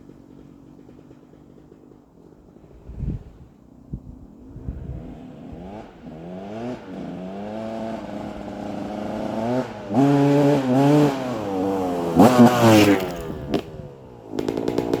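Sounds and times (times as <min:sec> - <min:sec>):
two-stroke engine revving: 0:04.5 - 0:15.0.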